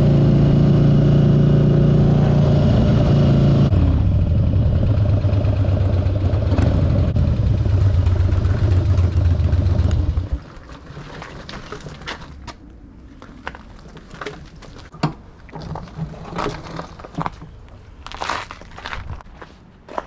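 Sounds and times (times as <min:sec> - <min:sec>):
motorcycle engine running: 0:00.0 - 0:10.5.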